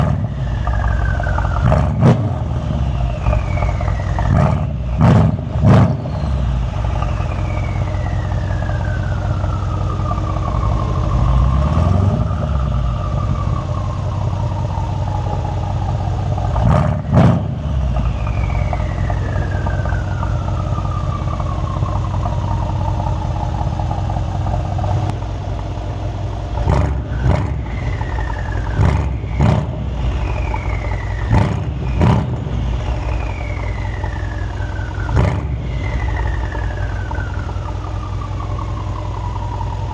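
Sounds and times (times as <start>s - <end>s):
car engine revving: 0.0s - 39.9s
turbo whistle falling in pitch: 5.7s - 13.7s, 27.0s - 39.9s.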